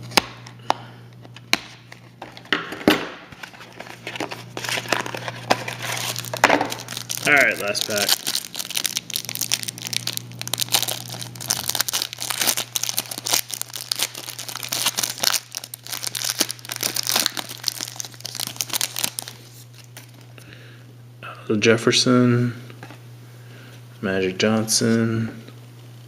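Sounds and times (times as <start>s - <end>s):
card pack wrapper crinkling: 3.3s - 20.3s.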